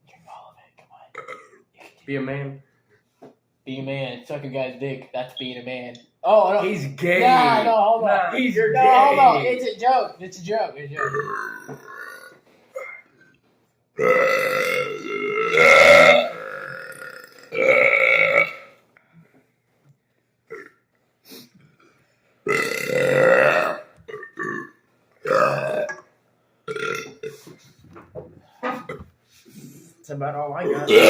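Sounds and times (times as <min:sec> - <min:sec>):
person burping: 0:01.2 - 0:01.8, 0:07.2 - 0:07.7, 0:11.0 - 0:13.3, 0:14.0 - 0:18.8, 0:20.5 - 0:20.8, 0:22.5 - 0:26.0, 0:26.7 - 0:27.6, 0:28.6 - 0:29.1, 0:30.6 - 0:31.0.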